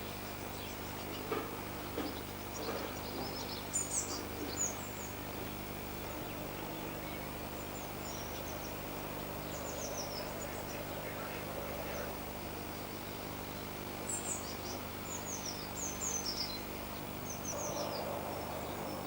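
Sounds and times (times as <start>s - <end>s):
songbirds chirping: 0.0s - 19.0s
low background drone: 4.8s - 19.0s.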